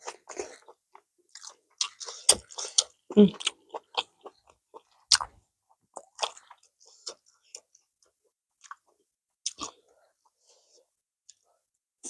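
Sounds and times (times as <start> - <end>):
chewing and mouth clicks: 0.0 - 5.3, 5.9 - 8.9.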